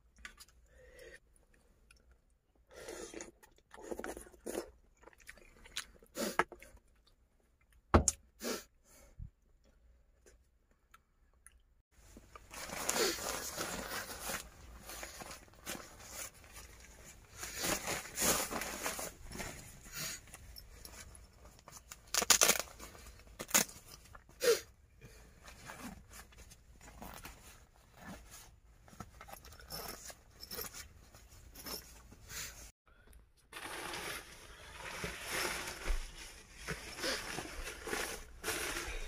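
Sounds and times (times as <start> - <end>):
rustling and crinkling handling: 12.0 - 24.4, 25.3 - 32.7, 33.5 - 39.0.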